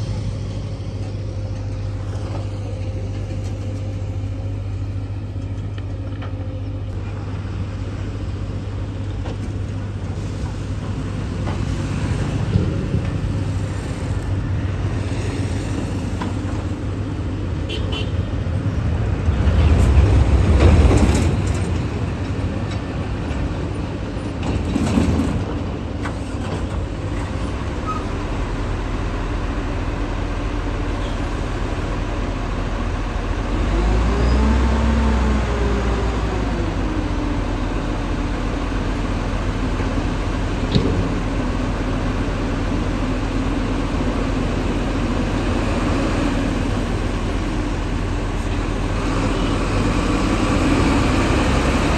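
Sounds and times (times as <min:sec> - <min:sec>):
traffic rumble: 0:00.0 - 0:51.9
vehicles passing: 0:00.0 - 0:51.9
heavy vehicle engine passing: 0:26.5 - 0:51.9.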